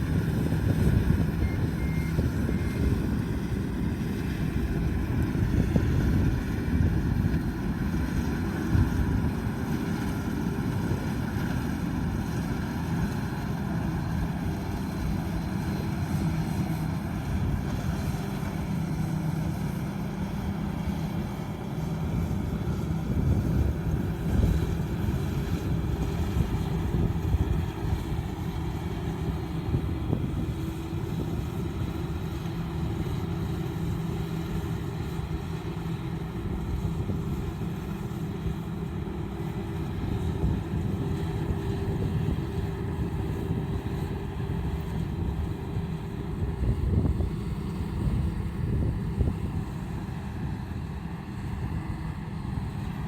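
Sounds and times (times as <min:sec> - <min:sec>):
combine harvester running: 0:00.0 - 0:53.0.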